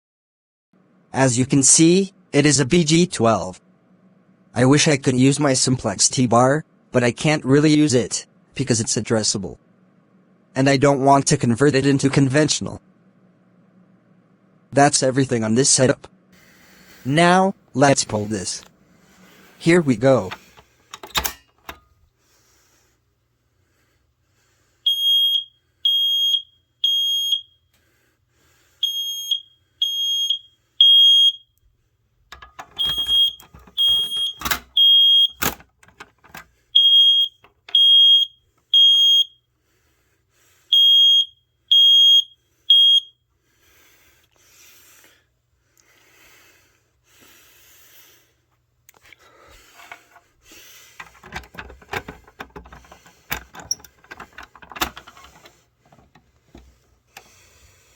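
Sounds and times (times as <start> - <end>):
smoke alarm beeping: 24.8 - 27.7, 28.8 - 31.6, 32.4 - 35.6, 36.8 - 39.5, 40.7 - 43.2
sharp knocks and clicks: 51.0 - 57.3.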